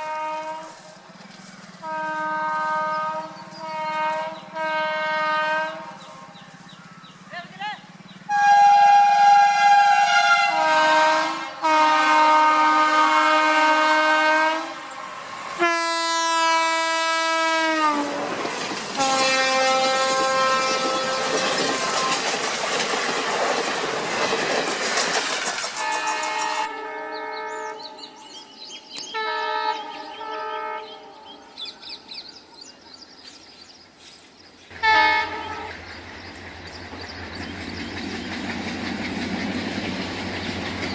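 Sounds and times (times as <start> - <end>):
locomotive horn blasts: 0.0 - 1.0, 1.8 - 6.6, 8.3 - 14.9, 15.6 - 18.4, 19.0 - 22.2, 25.8 - 28.3, 29.0 - 31.4, 34.8 - 35.8
train rushing and clacking: 0.0 - 26.9, 31.1 - 40.9.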